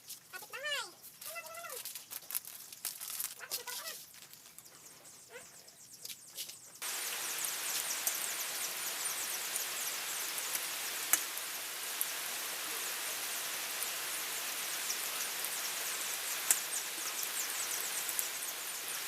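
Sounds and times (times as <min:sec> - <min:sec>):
rain hissing: 0:06.8 - 0:19.0.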